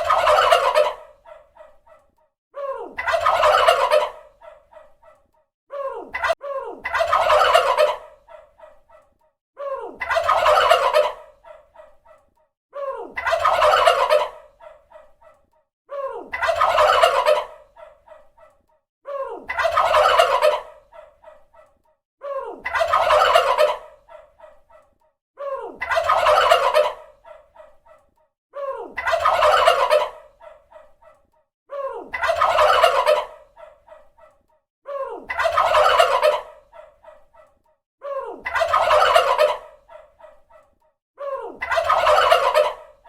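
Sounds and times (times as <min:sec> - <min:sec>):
turkey gobbling: 0:00.0 - 0:02.0, 0:03.0 - 0:04.9, 0:06.2 - 0:09.0, 0:10.0 - 0:11.9, 0:13.2 - 0:15.1, 0:16.3 - 0:18.2, 0:19.5 - 0:21.4, 0:22.6 - 0:24.5, 0:25.8 - 0:27.7, 0:29.0 - 0:30.9, 0:32.1 - 0:34.0, 0:35.3 - 0:37.2, 0:38.4 - 0:40.4, 0:41.6 - 0:43.0.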